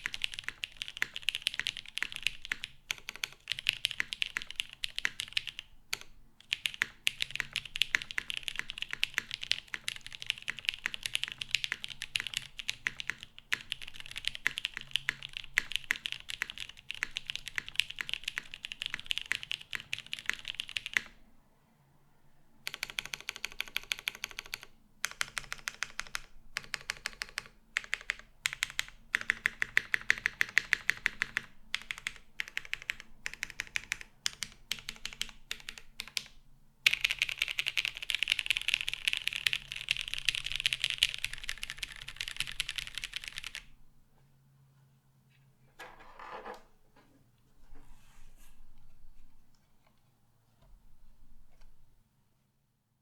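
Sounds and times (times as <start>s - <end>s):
mechanical keyboard typing: 0.0s - 21.2s, 22.7s - 43.7s.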